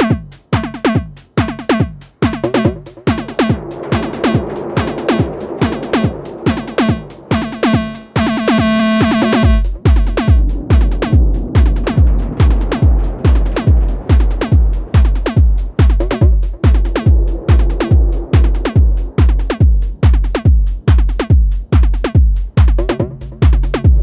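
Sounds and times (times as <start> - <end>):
kick drum: 0.0 - 24.0
held drone tone: 3.7 - 10.4
glitchy modulated clicks: 6.7 - 11.2.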